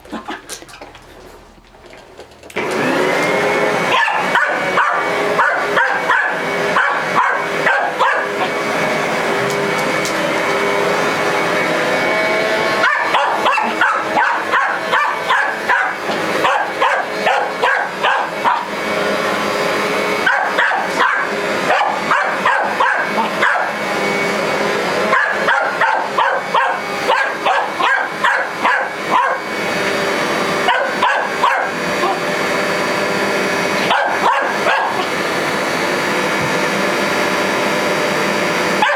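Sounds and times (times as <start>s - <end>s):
vacuum cleaner running: 2.5s - 38.9s
dog barking: 3.8s - 8.6s, 12.8s - 18.8s, 20.2s - 23.8s, 25.0s - 29.5s, 30.6s - 32.3s, 33.8s - 35.1s.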